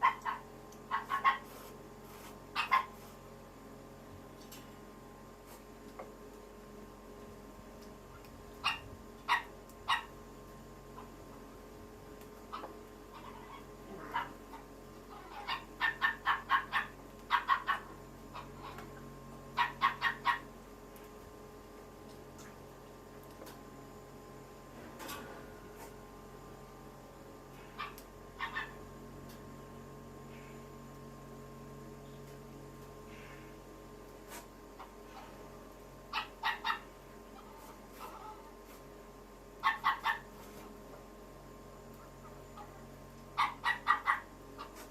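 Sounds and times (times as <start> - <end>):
animal high calls: 0.0 - 1.6, 2.6 - 3.0, 12.5 - 19.0, 19.6 - 20.5, 27.6 - 28.8, 36.1 - 38.6, 39.6 - 40.3, 43.4 - 44.9
low hum: 0.0 - 44.9.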